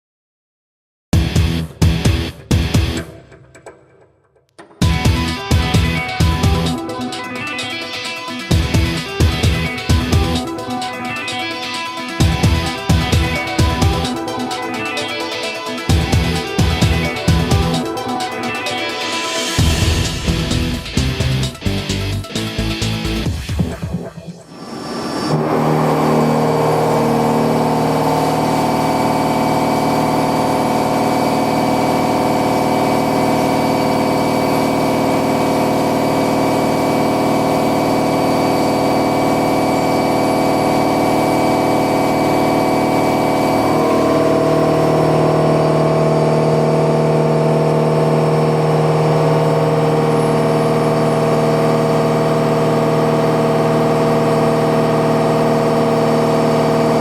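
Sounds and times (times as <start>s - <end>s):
milling machine cutting metal: 24.7s - 57.0s.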